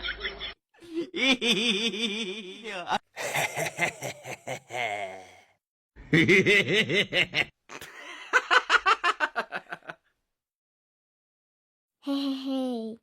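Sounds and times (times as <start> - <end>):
person laughing: 0.0 - 5.4.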